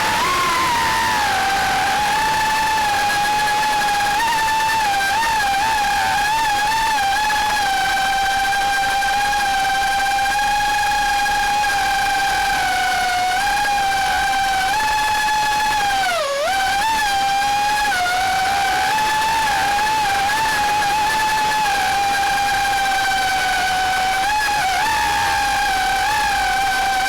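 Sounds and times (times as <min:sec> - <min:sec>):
drone propellers whining: 0:00.0 - 0:02.9.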